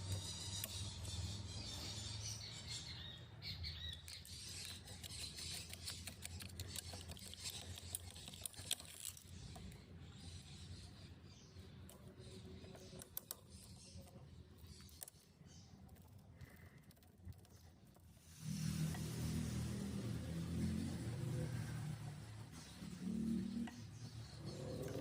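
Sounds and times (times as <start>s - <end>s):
quick mechanical clicks and ticks: 4.1s - 9.6s.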